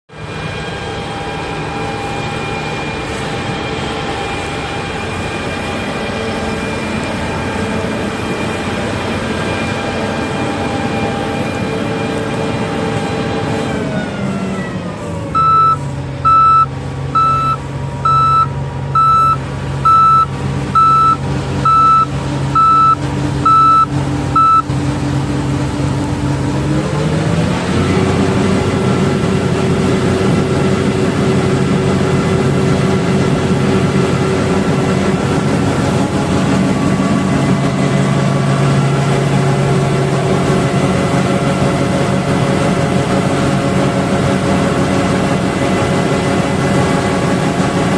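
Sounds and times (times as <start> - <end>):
diesel engine running: 0.1 - 47.9
reversing alarm beeping: 15.3 - 24.7.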